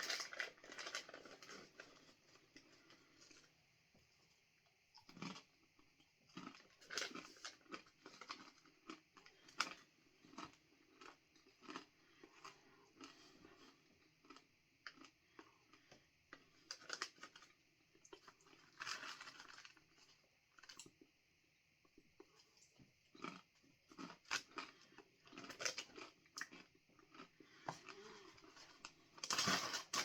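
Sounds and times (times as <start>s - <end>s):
person chewing crunchy chips: 0.0s - 3.5s, 5.0s - 5.6s, 6.3s - 15.9s, 23.1s - 30.0s.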